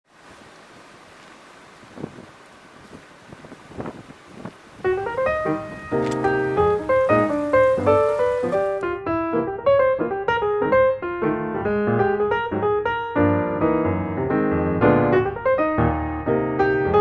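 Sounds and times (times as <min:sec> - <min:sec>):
piano music: 0:04.8 - 0:17.0.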